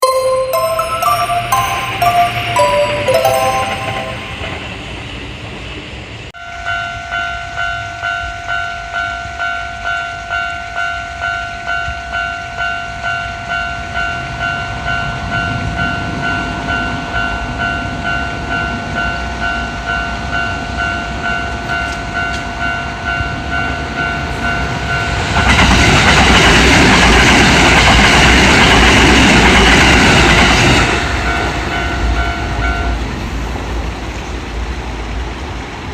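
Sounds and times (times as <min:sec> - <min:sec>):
level-crossing warning bell: 0:00.0 - 0:05.8, 0:06.4 - 0:33.1
train passing with rumble: 0:13.9 - 0:35.9.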